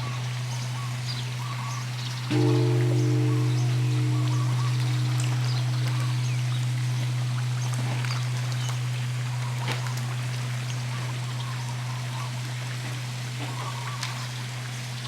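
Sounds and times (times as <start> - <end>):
running water trickling: 2.0 - 13.2
large bell humming: 2.3 - 11.8.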